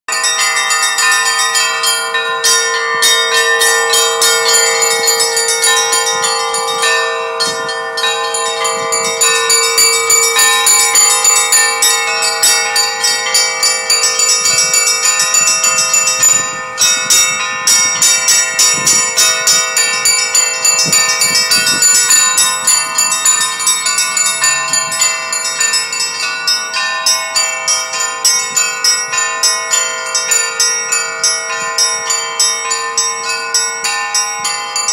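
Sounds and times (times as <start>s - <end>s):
church bells ringing: 0.1s - 34.9s
low ringing bell tone: 0.1s - 34.9s.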